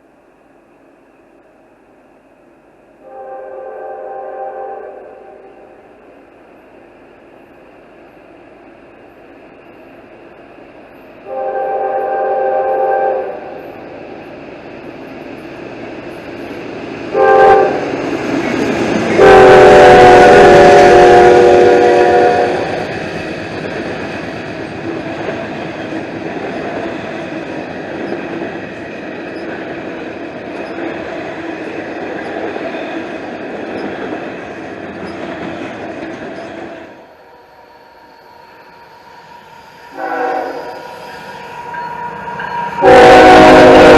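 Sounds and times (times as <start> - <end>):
train cars rumbling on rails: 0.0 - 43.9
locomotive horn blasts: 3.0 - 5.5, 11.2 - 13.6, 17.1 - 17.8, 19.2 - 22.7, 39.9 - 40.8, 42.8 - 43.9.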